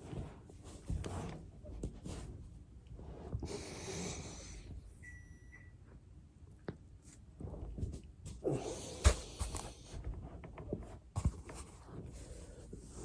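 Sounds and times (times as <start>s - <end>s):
body rubbing on foam roller: 0.0s - 4.9s.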